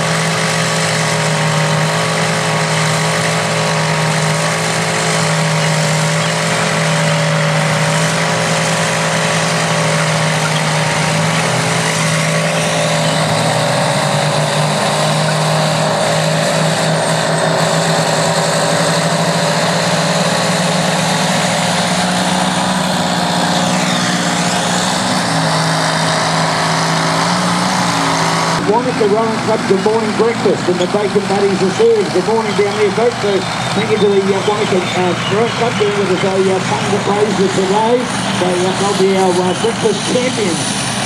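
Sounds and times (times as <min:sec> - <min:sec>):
bulldozer engines running: 0:00.0 - 0:41.0.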